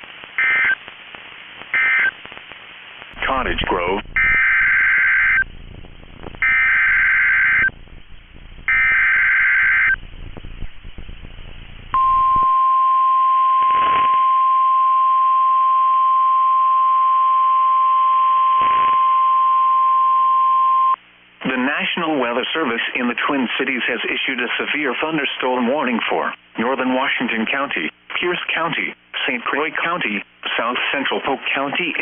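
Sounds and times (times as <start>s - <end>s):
buzzy data tone bursts: 3.2s - 12.6s
steady warning alarm tone: 4.1s - 5.5s, 6.4s - 7.7s, 8.7s - 10.0s.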